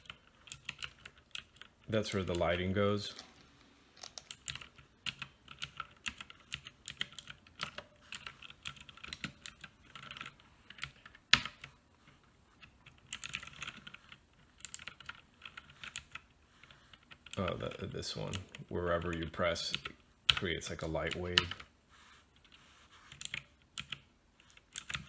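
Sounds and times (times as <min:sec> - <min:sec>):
mechanical keyboard keys clicking: 0:04.0 - 0:11.7, 0:24.6 - 0:25.0.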